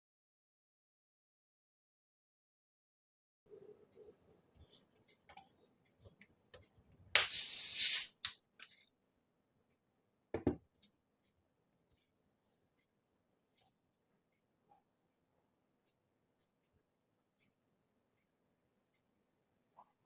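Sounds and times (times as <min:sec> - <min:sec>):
carbonation hissing: 0:07.2 - 0:08.3
plastic bottle cap clicks: 0:07.2 - 0:08.4.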